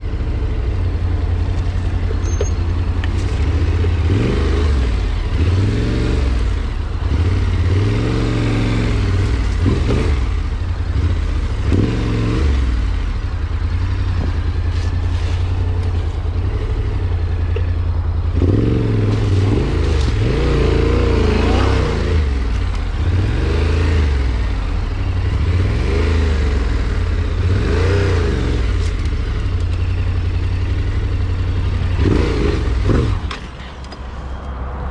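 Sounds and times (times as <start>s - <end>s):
clatter and rumble: 0.0s - 34.9s
vehicle engine revving: 0.0s - 34.9s.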